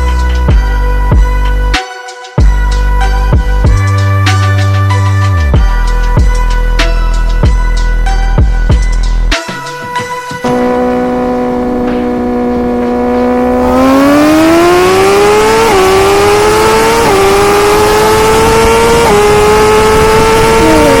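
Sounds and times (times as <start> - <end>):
high-revving vehicle engine accelerating: 10.4 - 21.0.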